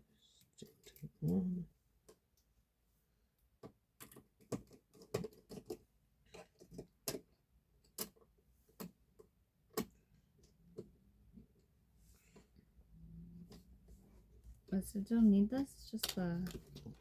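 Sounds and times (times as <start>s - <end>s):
clicks handling computer parts: 16.0s - 17.0s.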